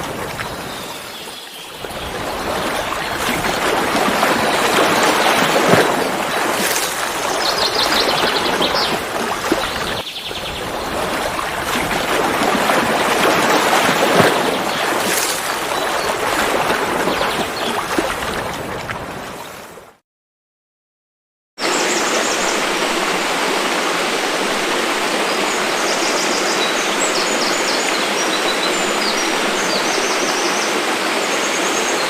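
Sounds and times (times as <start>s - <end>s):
waterfall rushing: 0.0s - 10.0s, 10.6s - 17.1s, 21.6s - 32.0s.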